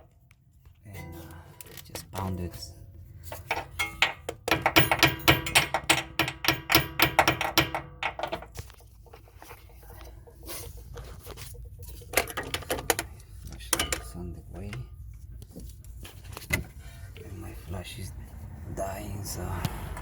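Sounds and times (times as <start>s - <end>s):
small hammer tapping metal: 3.3s - 8.6s.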